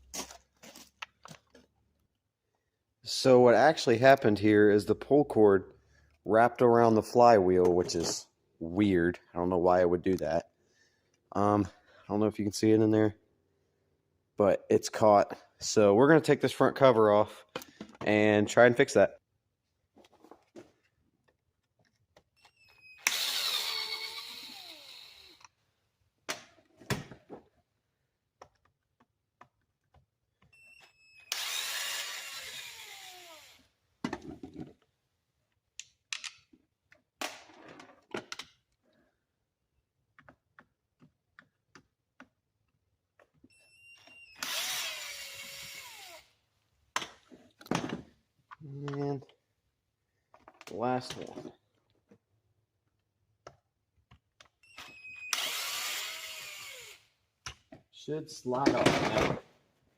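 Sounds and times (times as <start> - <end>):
power drill spinning screws: 22.4 - 25.6, 30.6 - 33.7, 43.8 - 46.4, 54.6 - 57.1.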